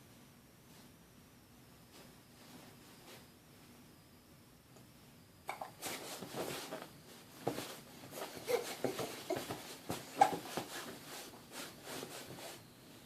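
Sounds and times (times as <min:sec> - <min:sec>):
baby hiccupping: 0:05.5 - 0:05.8, 0:08.2 - 0:10.7.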